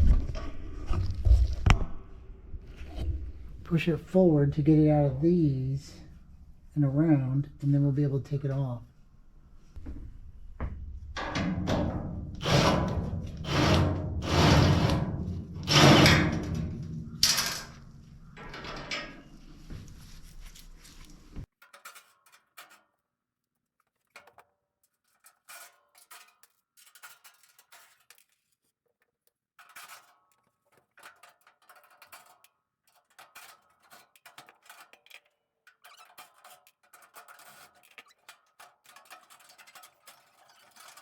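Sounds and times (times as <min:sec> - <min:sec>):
hand work on sheet metal: 0:11.2 - 0:23.0, 0:25.0 - 0:28.6, 0:29.6 - 0:41.0.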